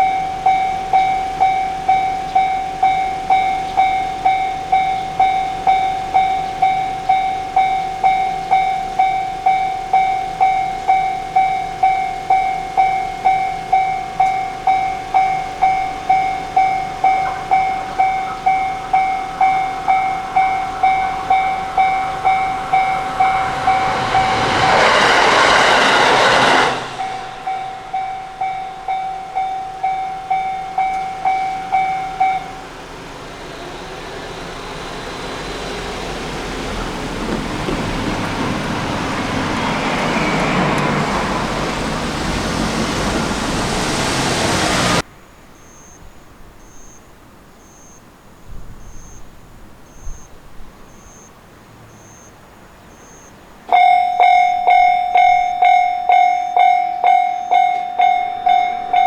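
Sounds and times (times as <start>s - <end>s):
level-crossing bell ringing: 0.0s - 35.4s, 53.7s - 59.0s
train passing: 0.0s - 45.8s, 49.8s - 59.0s.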